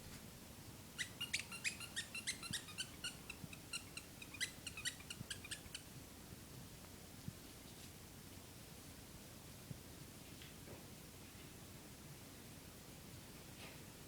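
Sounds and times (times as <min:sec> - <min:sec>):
squeaky toy ball squeaking: 0:01.0 - 0:05.9.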